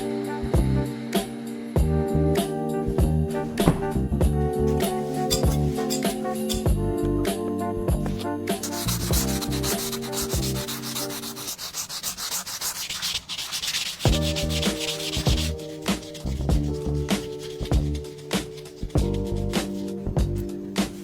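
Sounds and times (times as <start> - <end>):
background music: 0.0 - 21.0
hand sanding strokes: 8.6 - 20.0.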